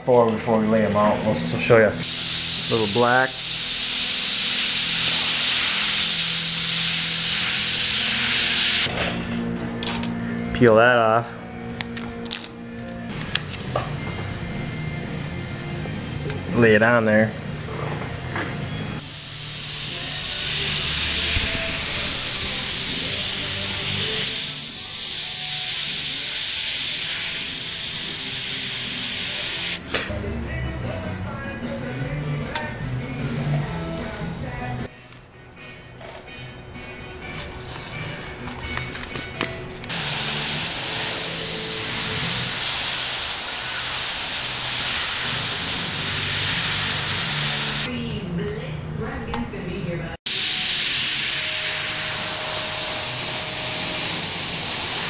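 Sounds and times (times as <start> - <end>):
airbrush spraying hiss: 2.0 - 8.9, 19.0 - 29.8, 39.9 - 47.9, 50.3 - 55.0.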